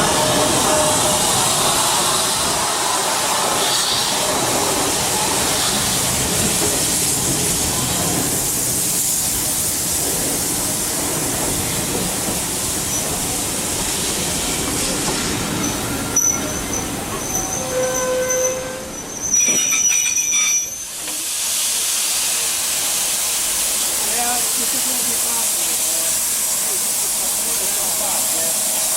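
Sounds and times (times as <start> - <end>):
train running on rails: 0.0 - 28.9
high wheel squeal: 15.6 - 21.0.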